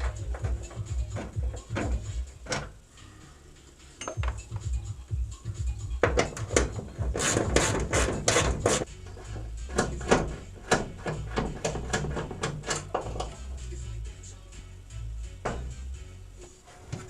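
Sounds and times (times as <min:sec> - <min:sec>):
hand tools clicking on bolts: 0:06.0 - 0:13.4.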